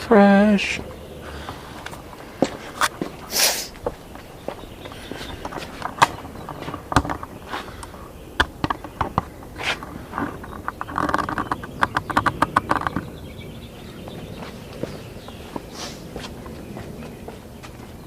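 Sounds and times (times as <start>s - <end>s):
hands knocking and scraping parts: 4.8s - 7.8s.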